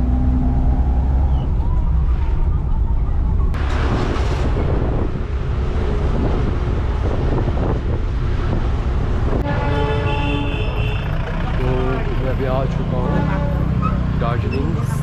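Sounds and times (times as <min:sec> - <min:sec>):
vehicle engine and road rumble: 0:00.0 - 0:15.0
wind buffeting microphone: 0:01.4 - 0:09.8.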